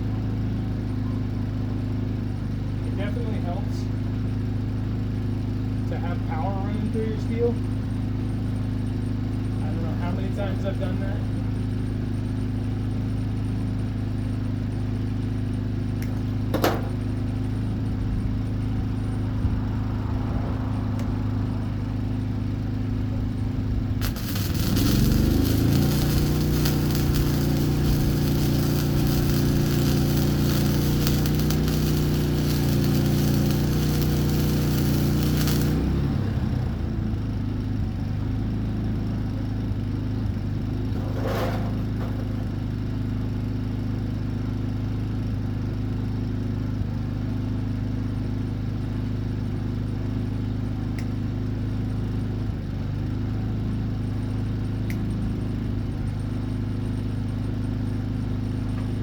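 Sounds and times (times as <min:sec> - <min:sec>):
low machine hum: 0:23.1 - 0:36.8
arc welding crackle: 0:24.0 - 0:36.8.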